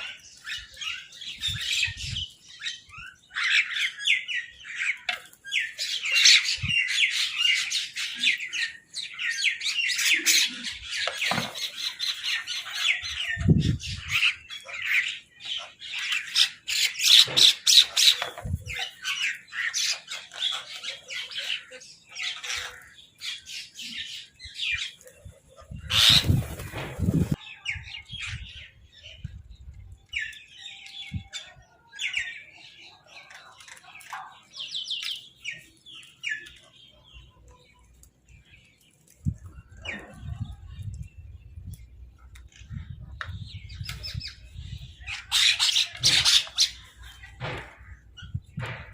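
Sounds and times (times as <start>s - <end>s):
crows and birds squawking: 2.6s - 24.9s, 25.6s - 26.6s.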